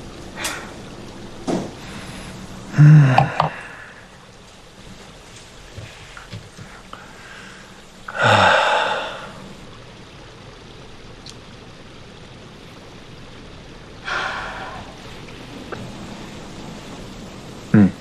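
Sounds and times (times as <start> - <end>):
person gasping loudly: 2.8 - 4.1, 8.1 - 9.4.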